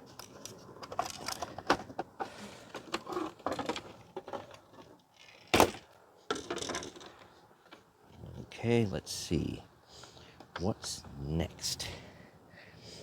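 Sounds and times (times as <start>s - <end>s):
plastic parts clicking and clattering: 0.1s - 7.9s.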